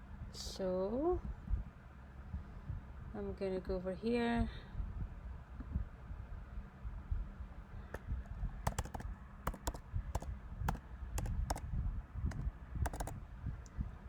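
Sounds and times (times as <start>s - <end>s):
keyboard and mouse clicks: 8.7s - 11.6s, 12.3s - 13.2s.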